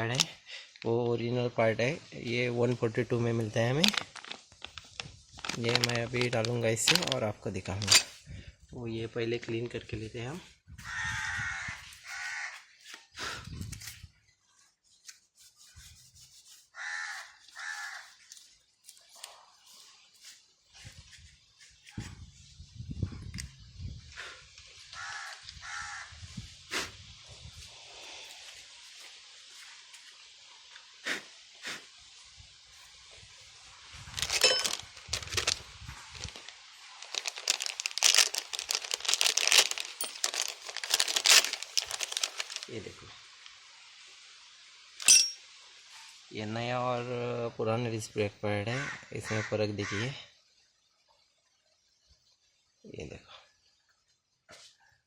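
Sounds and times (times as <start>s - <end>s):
paper or plastic crinkling: 3.4s - 8.2s, 34.0s - 43.5s
crows cawing: 10.8s - 12.7s, 16.8s - 18.2s, 25.0s - 26.1s
rubbing and scraping: 14.6s - 16.8s, 34.1s - 42.7s.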